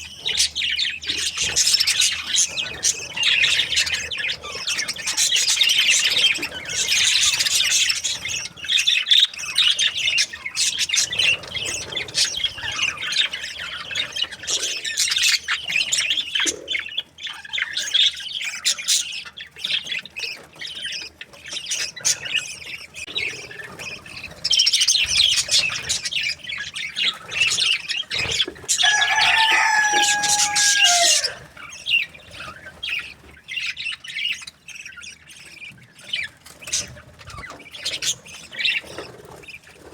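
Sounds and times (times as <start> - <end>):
budgerigars chirping and chattering: 0.0 - 39.9
lower held bird call: 28.8 - 31.5.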